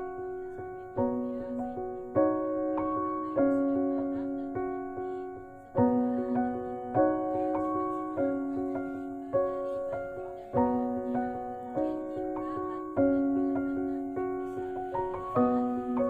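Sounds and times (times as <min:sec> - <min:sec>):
slow piano piece: 0:00.0 - 0:16.0.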